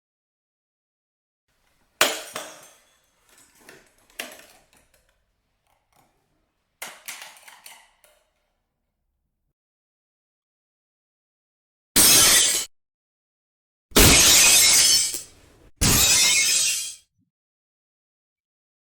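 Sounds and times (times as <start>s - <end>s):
glass shards tinkling: 2.0s - 4.8s
glass shattering: 2.0s - 5.0s, 12.0s - 12.7s, 14.0s - 17.0s.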